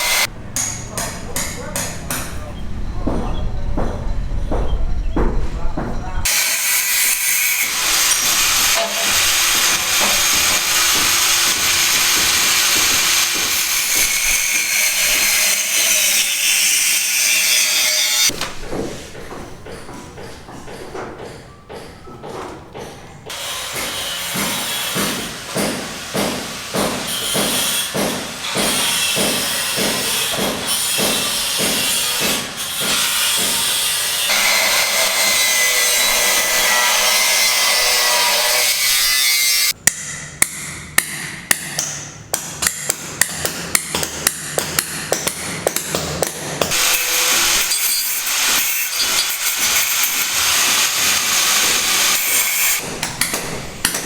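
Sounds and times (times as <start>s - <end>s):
steady tool noise: 0.0s - 2.4s, 6.2s - 22.0s, 22.8s - 39.8s, 42.4s - 54.0s
tool strokes: 6.3s - 19.2s, 46.6s - 53.3s.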